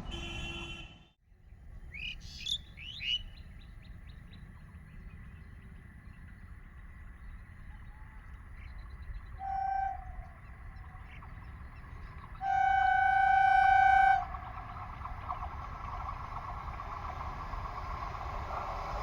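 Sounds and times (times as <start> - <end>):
bird chirping: 1.8 - 12.9.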